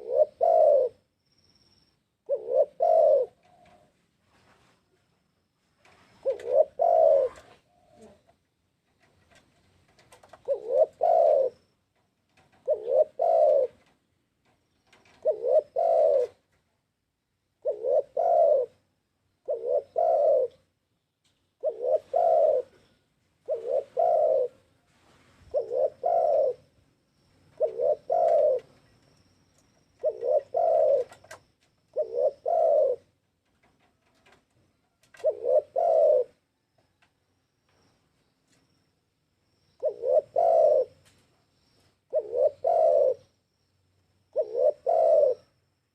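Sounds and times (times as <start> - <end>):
dove cooing: 0.0 - 1.1, 2.2 - 4.0, 5.9 - 8.4, 9.2 - 11.7, 12.3 - 13.9, 14.8 - 16.5, 17.6 - 20.7, 21.6 - 24.7, 25.5 - 26.7, 27.5 - 28.9, 30.0 - 33.2, 34.2 - 36.5, 39.8 - 41.0, 42.1 - 43.4, 44.3 - 45.6.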